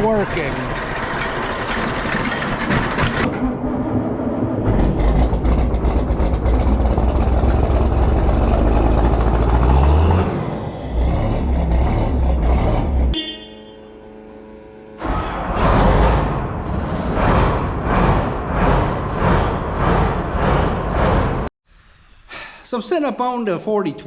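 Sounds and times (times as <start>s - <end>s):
tractor engine deep rumble: 0.0s - 10.1s.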